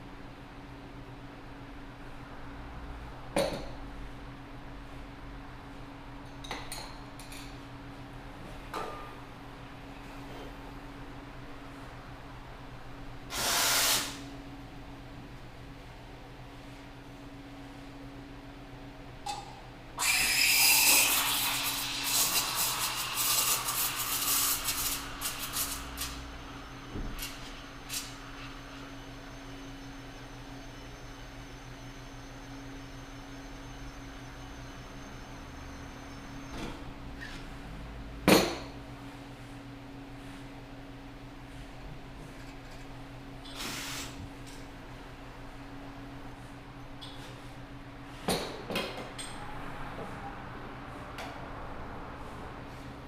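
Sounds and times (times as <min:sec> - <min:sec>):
steam wand hissing: 0:13.3 - 0:14.2, 0:20.0 - 0:26.2, 0:43.6 - 0:44.2.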